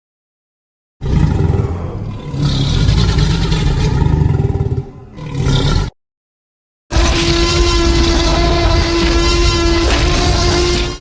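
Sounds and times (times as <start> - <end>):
deep rough dinosaur roar: 1.0 - 6.0.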